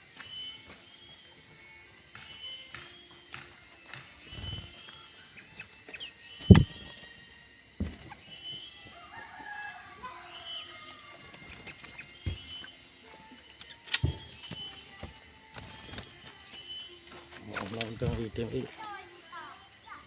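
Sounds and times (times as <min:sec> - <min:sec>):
loud dull thumps: 0:06.4 - 0:06.8
rooster crowing: 0:08.8 - 0:11.5.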